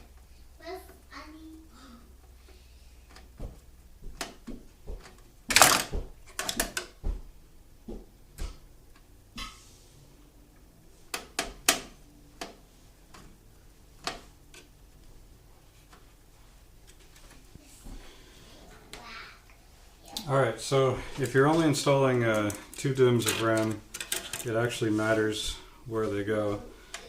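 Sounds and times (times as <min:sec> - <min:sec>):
computer parts clicking and knocking: 0:04.2 - 0:07.0.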